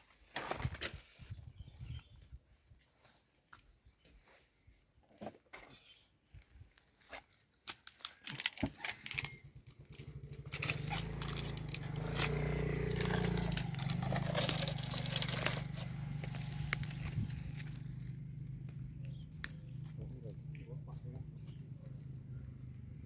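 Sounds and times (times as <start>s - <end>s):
clicks and scrapes: 7.1s - 18.0s
bandsaw running: 10.0s - 18.2s.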